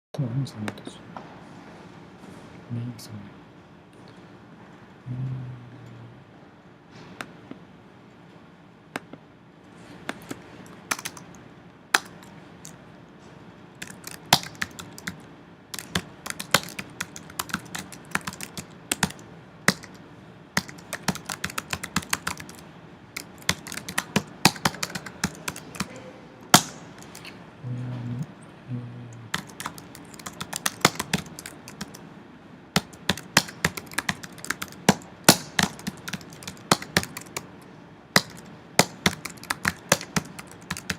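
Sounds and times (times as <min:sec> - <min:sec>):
typing on computer keyboard: 0:10.1 - 0:11.3, 0:13.8 - 0:20.0, 0:20.6 - 0:22.6, 0:23.2 - 0:25.9, 0:29.3 - 0:32.0, 0:32.8 - 0:37.5, 0:38.2 - 0:40.9.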